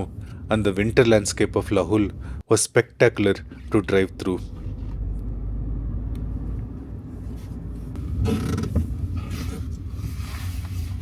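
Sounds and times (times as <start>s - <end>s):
vehicle rumbling from inside cabin: 0.0s - 2.4s, 3.4s - 11.0s
creaking rustle: 7.3s - 11.0s.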